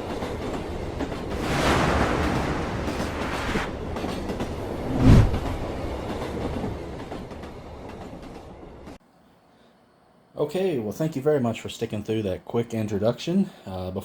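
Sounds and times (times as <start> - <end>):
train rumble and clatter on rails: 0.0 - 9.0.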